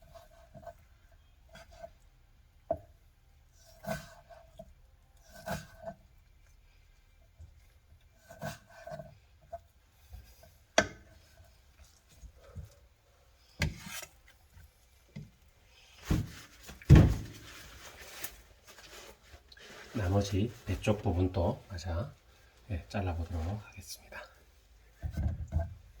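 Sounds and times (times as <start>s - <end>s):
knife slicing fish: 13.6s - 14.2s.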